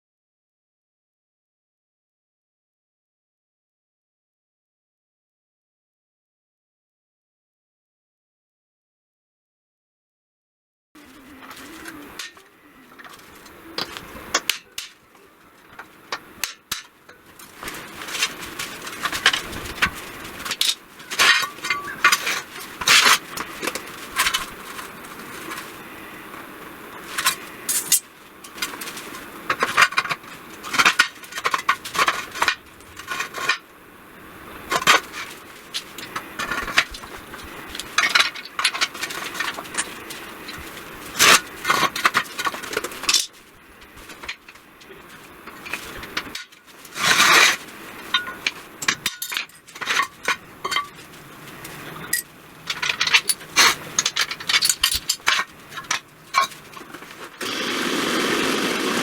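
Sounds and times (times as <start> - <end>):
metal clanks and taps: 52.0 - 56.6.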